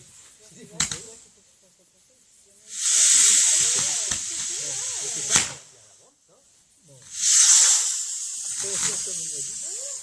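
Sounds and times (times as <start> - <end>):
firework spraying hiss: 0.0 - 10.0
firework sharp crack: 0.8 - 1.2, 2.7 - 5.9, 7.0 - 10.0.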